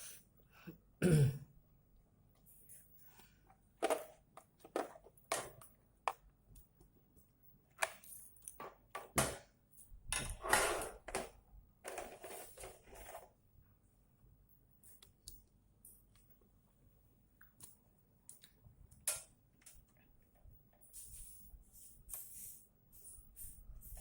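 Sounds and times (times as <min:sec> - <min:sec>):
scraping and rustling: 0:11.9 - 0:13.4.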